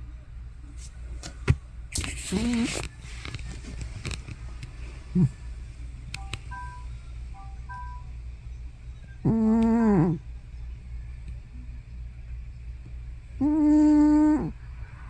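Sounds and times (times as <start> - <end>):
cat snoring: 2.3 - 2.8, 5.1 - 5.4, 9.2 - 10.2, 13.4 - 14.6
low wavering cat voice: 9.2 - 10.3, 13.4 - 14.6.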